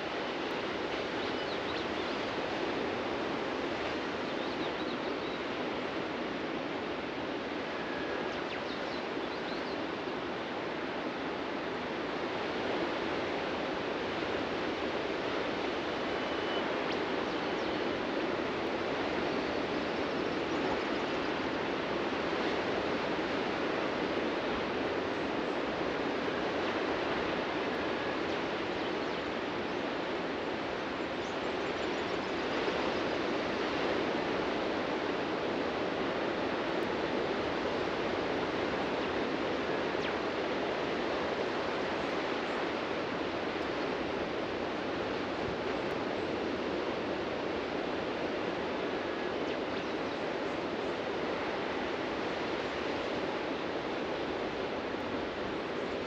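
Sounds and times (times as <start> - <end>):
ocean surf washing onto beach: 9.8 - 56.0
faint bird chirps: 16.1 - 17.9.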